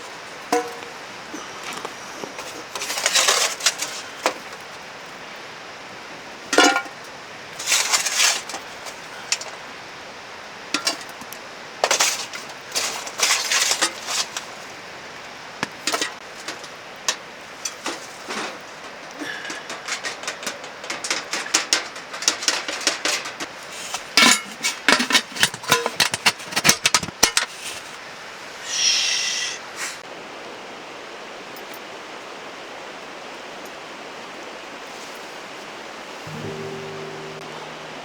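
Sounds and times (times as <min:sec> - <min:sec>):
utensils clinking against bowl: 0:00.5 - 0:01.1, 0:06.6 - 0:09.5, 0:24.2 - 0:27.4.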